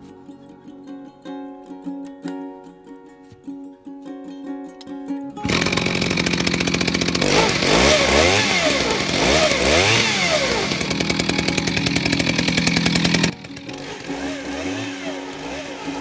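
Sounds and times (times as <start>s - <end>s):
chainsaw ripping log: 5.4s - 16.0s.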